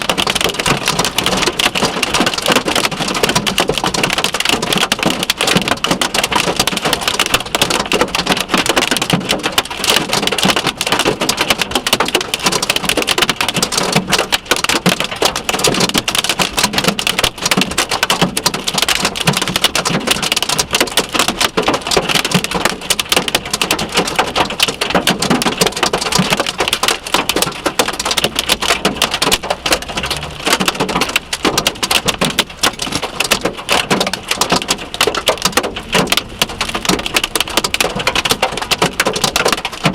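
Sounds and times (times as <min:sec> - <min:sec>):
hail and rain pelting a car: 0:00.0 - 0:39.9.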